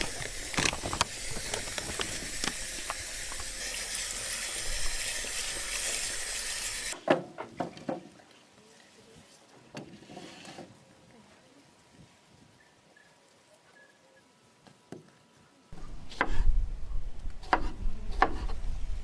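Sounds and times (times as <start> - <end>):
steady kitchen hiss: 0.0 - 7.0.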